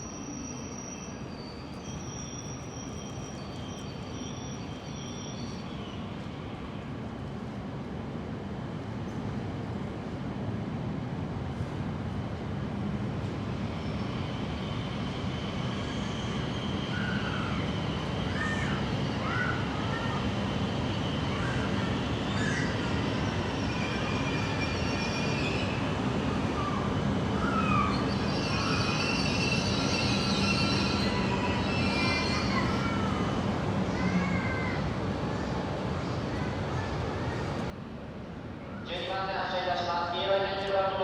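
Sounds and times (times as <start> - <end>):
wheel squeals: 0.0 - 5.8, 27.4 - 33.1
train running on rails: 0.0 - 41.0.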